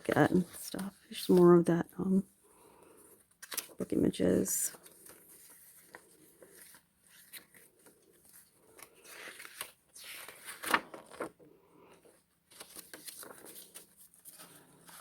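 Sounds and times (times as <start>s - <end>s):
paper pages rustling: 0.0s - 1.6s, 3.1s - 3.9s, 4.6s - 15.0s
page flap: 3.4s - 3.8s, 8.7s - 11.4s, 12.5s - 15.0s.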